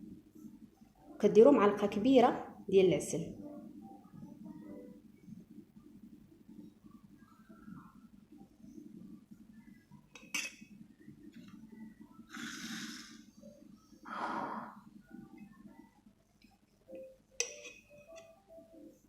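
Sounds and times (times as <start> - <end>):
low steady hum: 0.0 - 19.0
spoon clinking: 10.2 - 10.7, 17.0 - 18.3.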